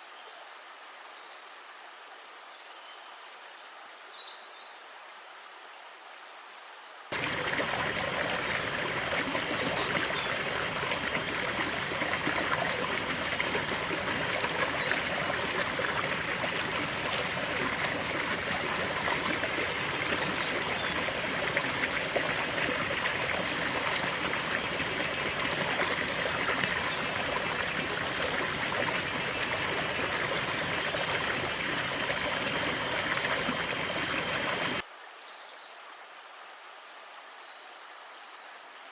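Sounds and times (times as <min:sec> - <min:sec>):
river water rushing: 0:07.1 - 0:34.8.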